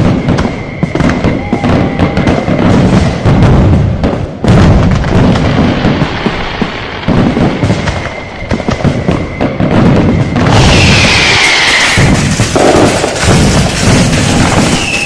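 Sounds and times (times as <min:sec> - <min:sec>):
faint steady whistle: 0:00.0 - 0:02.7, 0:07.5 - 0:12.3, 0:14.4 - 0:15.0
deep rumbling booms: 0:00.0 - 0:15.0
firecrackers crackling: 0:00.0 - 0:15.0
firework hissing burst: 0:04.9 - 0:15.0
whistle falling in pitch: 0:10.5 - 0:12.2, 0:14.6 - 0:15.0.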